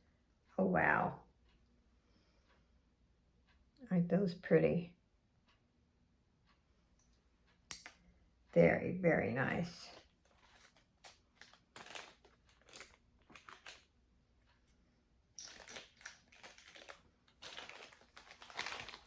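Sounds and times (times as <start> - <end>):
packaging rustling and crinkling: 10.0 - 13.9, 15.4 - 19.0.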